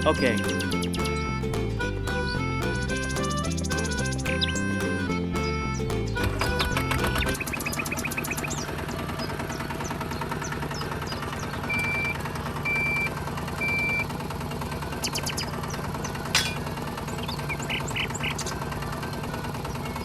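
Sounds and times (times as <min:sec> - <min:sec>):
small motor humming: 0:06.1 - 0:20.0.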